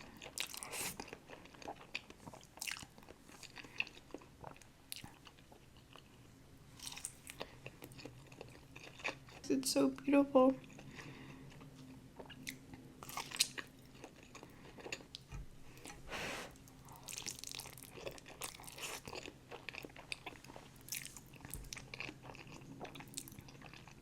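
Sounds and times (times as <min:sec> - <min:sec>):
person chewing food: 0:00.0 - 0:09.4, 0:10.6 - 0:16.0, 0:16.6 - 0:24.0.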